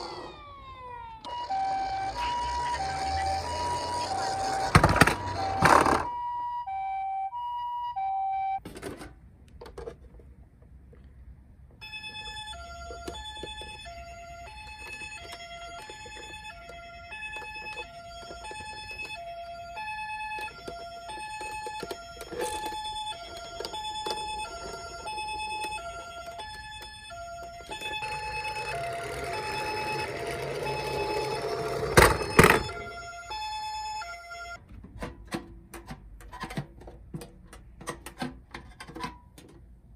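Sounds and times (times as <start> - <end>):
toy ambulance two-tone siren: 0.0 - 8.6, 11.8 - 34.6.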